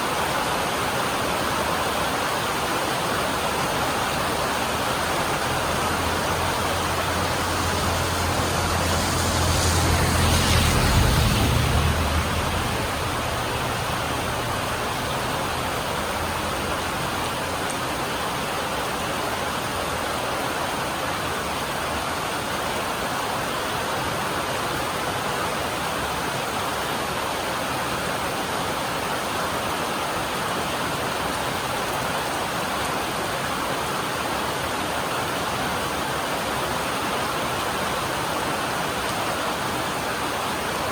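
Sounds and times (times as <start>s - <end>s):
heavy rain on a metal roof: 0.0s - 40.9s
low rumble: 5.5s - 16.5s.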